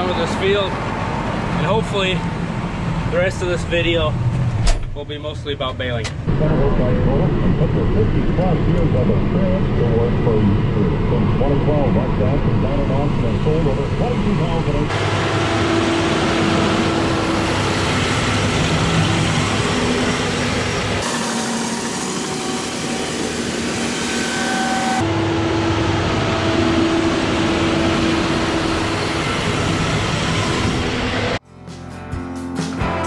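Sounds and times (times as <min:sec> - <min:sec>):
tractor engine running: 0:05.9 - 0:31.4.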